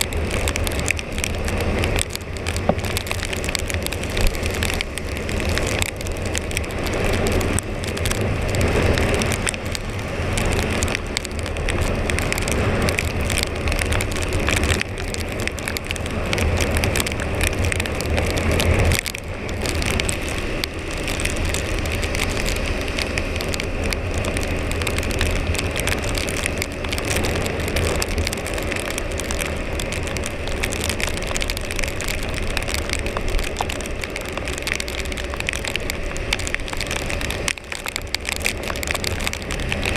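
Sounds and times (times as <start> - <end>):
tyres hissing on wet road: 0.0 - 39.9.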